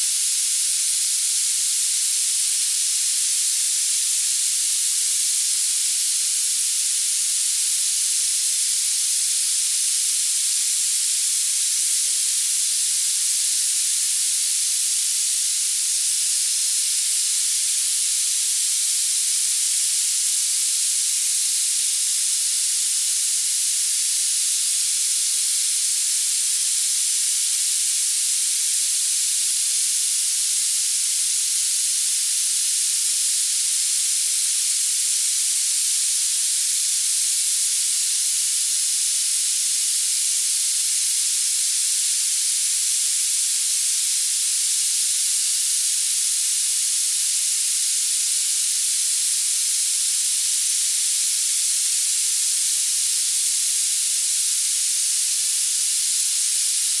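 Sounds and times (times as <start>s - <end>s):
high-pitched filtered noise hiss: 0.0s - 57.0s.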